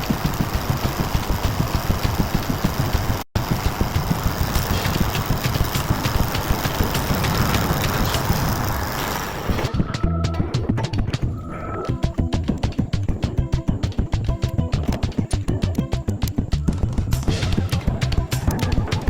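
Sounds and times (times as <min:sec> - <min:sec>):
diesel engine idling: 0:00.0 - 0:09.6
music: 0:09.6 - 0:19.0.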